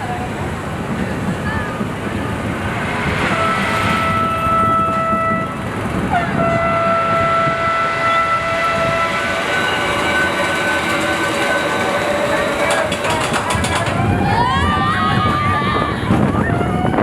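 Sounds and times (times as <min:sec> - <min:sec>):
train rolling rumble: 0:00.0 - 0:17.0
train motor whine: 0:01.8 - 0:16.3.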